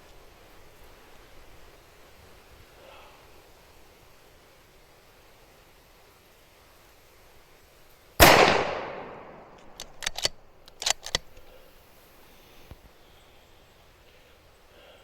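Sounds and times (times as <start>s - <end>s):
rifle shot with echo: 8.2s - 11.0s
sharp clicks: 8.2s - 11.6s.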